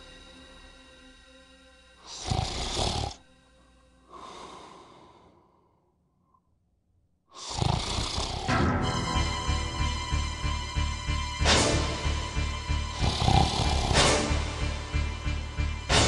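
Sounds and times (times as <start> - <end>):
man snoring loudly: 2.0 - 3.2, 7.3 - 8.6, 12.9 - 14.6.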